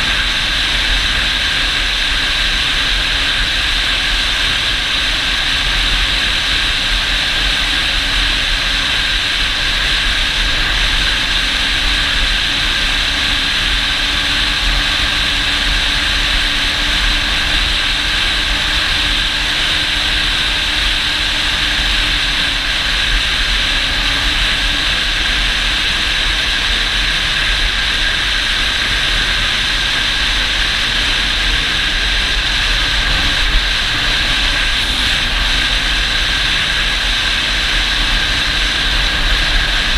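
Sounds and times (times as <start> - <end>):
engine running steadily: 0.0 - 39.9
wind noise on microphone: 0.0 - 39.9.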